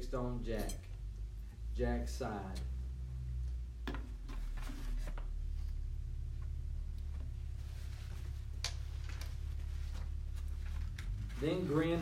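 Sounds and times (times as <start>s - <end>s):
low room hum: 0.0s - 12.0s
soft rustling: 4.3s - 12.0s.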